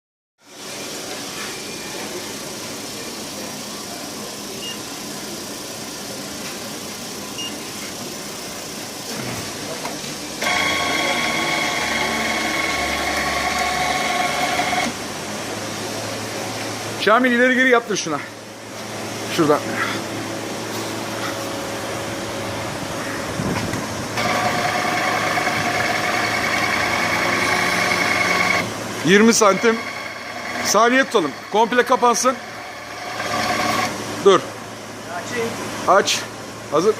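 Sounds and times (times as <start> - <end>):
machinery running: 0.6 - 17.8, 19.1 - 34.6
electric motor hum: 10.4 - 15.0, 24.1 - 34.0
motor whine: 10.4 - 15.0, 21.7 - 34.0.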